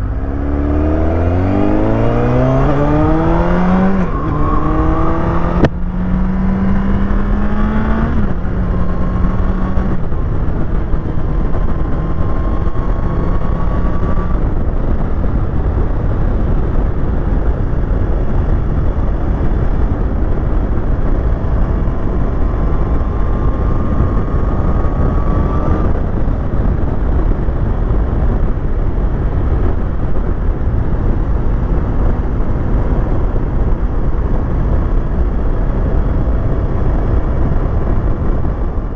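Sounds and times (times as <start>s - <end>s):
motorcycle engine rising in pitch: 0.0s - 38.9s
wind buffeting a microphone: 0.0s - 38.9s.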